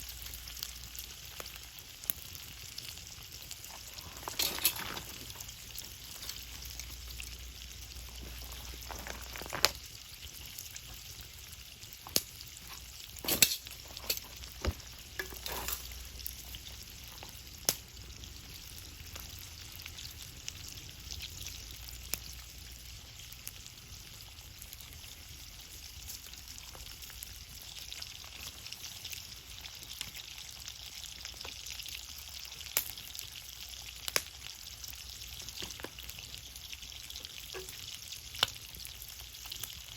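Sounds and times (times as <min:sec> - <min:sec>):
food sizzling over fire: 0:00.0 - 0:39.9
fire crackling pops: 0:00.5 - 0:23.6, 0:32.7 - 0:33.1, 0:34.1 - 0:34.4, 0:37.5 - 0:38.6.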